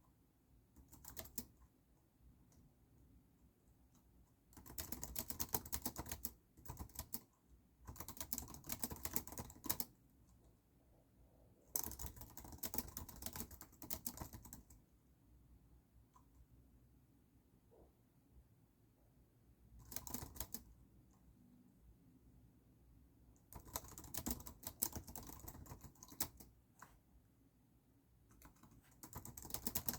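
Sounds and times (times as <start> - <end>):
typing on computer keyboard: 0.8 - 1.7, 4.5 - 10.0, 11.7 - 14.8, 19.8 - 20.7, 23.4 - 26.9, 28.3 - 29.9.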